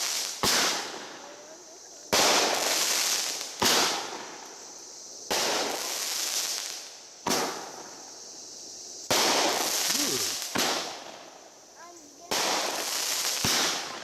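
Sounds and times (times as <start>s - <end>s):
fireworks popping and hissing: 0.0s - 14.0s.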